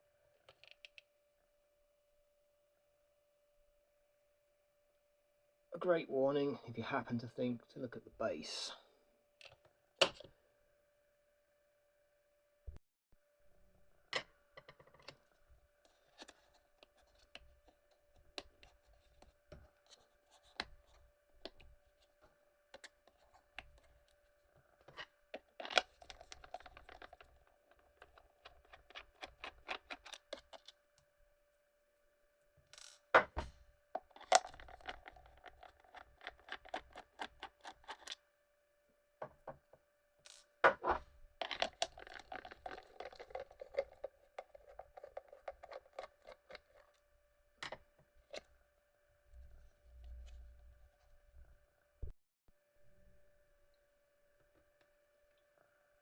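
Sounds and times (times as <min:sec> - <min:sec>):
plastic milk frother rattling: 0:25.4 - 0:30.7, 0:34.0 - 0:38.2, 0:41.4 - 0:47.0.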